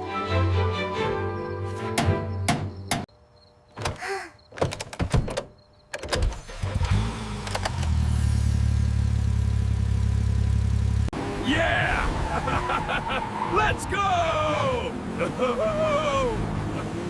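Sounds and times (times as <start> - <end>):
car engine starting and running: 6.0 - 11.4.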